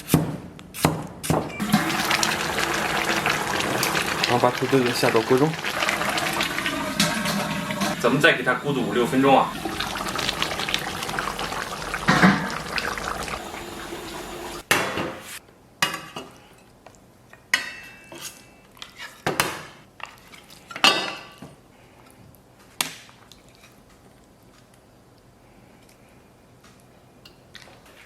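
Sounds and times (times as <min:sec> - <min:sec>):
pot simmering with bubbling hiss: 0:01.6 - 0:15.4.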